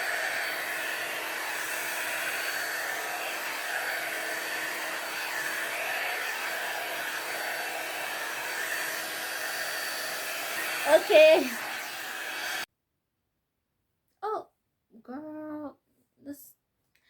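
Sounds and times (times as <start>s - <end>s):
hair dryer running: 0.0s - 12.7s.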